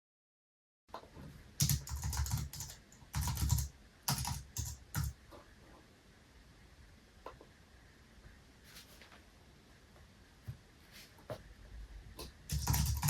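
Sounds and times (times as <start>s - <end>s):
computer keyboard typing: 1.6s - 5.2s, 12.2s - 13.0s.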